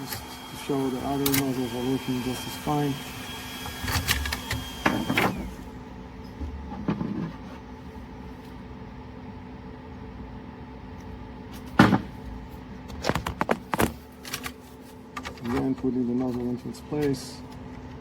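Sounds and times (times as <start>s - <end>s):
printer humming: 0.0s - 18.0s
printer parts clicking and knocking: 12.9s - 14.6s, 15.2s - 15.9s.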